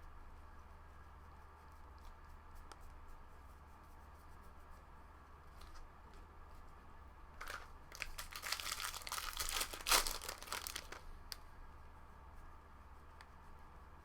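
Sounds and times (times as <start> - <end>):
foil wrapper crinkling and tearing: 7.4 - 11.4.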